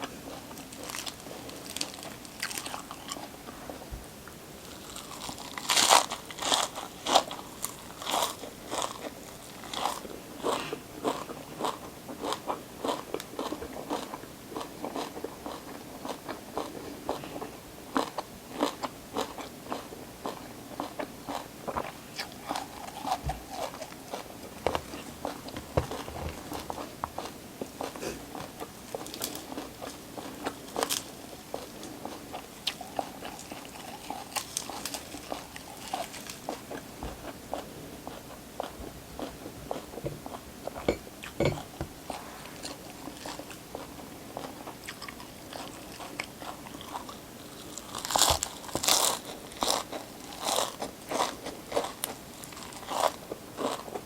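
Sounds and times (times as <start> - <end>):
crunching raw vegetables: 0.0 - 3.8, 4.6 - 54.0.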